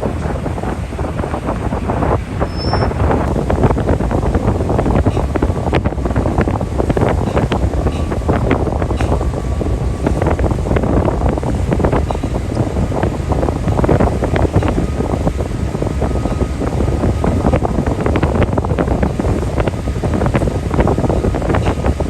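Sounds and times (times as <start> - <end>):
ferry engine rumble: 0.0 - 22.0
wind buffeting microphone: 0.0 - 22.0.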